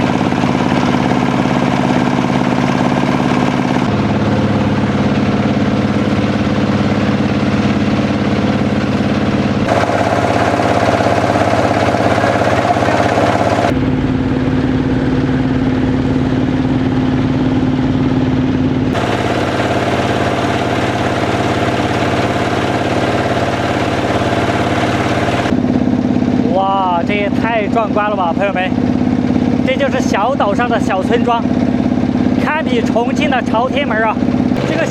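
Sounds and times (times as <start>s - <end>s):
boat engine humming: 0.0s - 34.9s.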